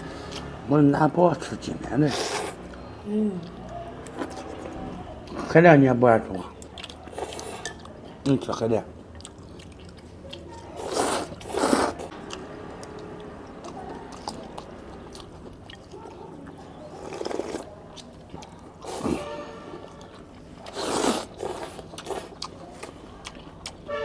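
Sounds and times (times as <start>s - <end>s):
person chewing: 0.0s - 0.6s, 3.4s - 5.6s, 6.3s - 8.3s, 9.0s - 23.9s
noisy noodle slurps: 2.0s - 2.6s, 10.8s - 12.1s, 16.9s - 17.7s, 18.8s - 19.4s, 20.6s - 22.9s.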